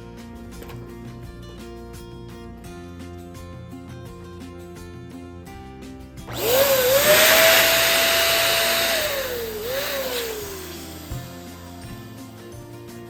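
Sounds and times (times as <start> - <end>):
background music: 0.0 - 13.0
balloon inflator motor whine: 6.3 - 12.2.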